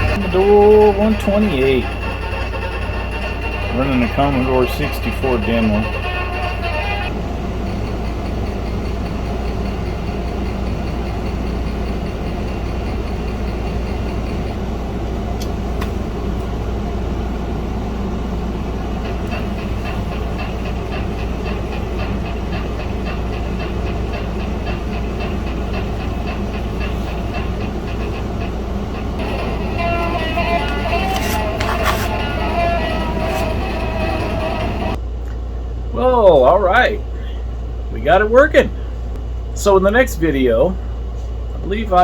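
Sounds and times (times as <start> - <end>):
fast rhythmic synth pattern: 0.0 - 7.1
synth low drone: 0.0 - 15.0, 17.6 - 35.0.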